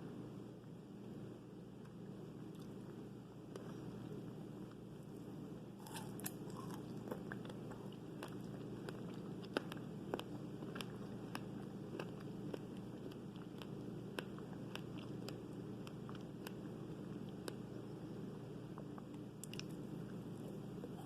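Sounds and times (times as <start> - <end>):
low background noise: 0.0 - 21.0
person chewing fruit: 1.9 - 2.9, 5.8 - 18.0, 18.7 - 21.0.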